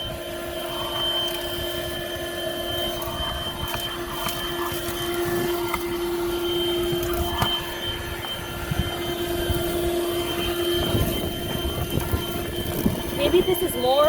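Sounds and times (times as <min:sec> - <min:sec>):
handheld vacuum motor whine: 0:00.0 - 0:14.0.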